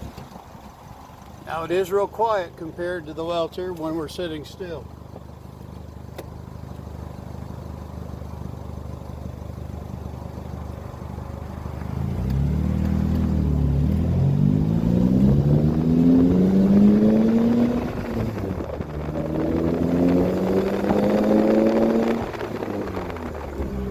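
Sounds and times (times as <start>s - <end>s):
car engine accelerating: 0.0s - 23.9s.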